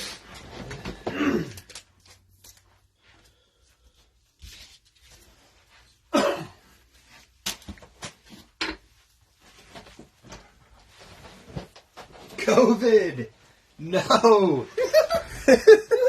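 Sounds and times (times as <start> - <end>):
person sneezing loudly: 6.1 - 6.6.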